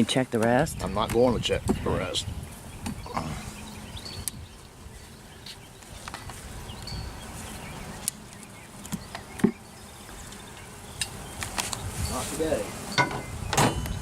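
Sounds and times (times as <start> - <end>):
bees buzzing: 0.0 - 14.0
clicks of hive parts: 0.3 - 1.8, 2.8 - 3.1, 4.2 - 4.7, 5.4 - 7.0, 7.8 - 11.9, 12.8 - 14.0
knock of hive parts: 2.8 - 3.1, 8.9 - 9.6, 13.0 - 14.0.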